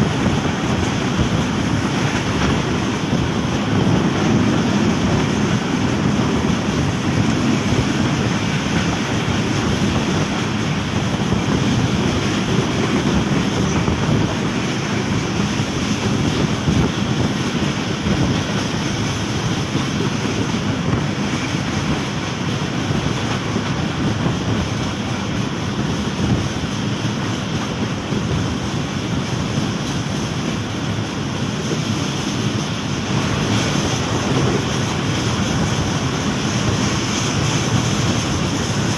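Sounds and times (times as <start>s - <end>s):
train rumbling: 0.0s - 38.9s
wind buffeting microphone: 0.0s - 38.9s.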